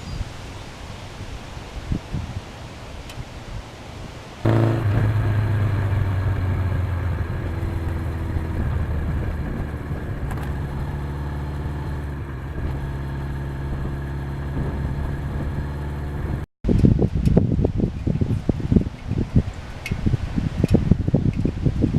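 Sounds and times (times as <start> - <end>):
motorcycle engine running: 4.5 - 19.4.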